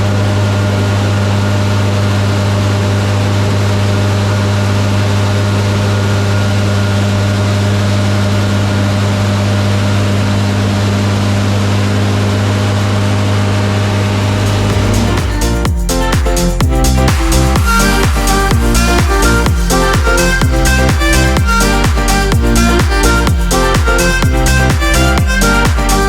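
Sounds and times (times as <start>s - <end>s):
farm machinery engine drone: 14.0s - 15.6s.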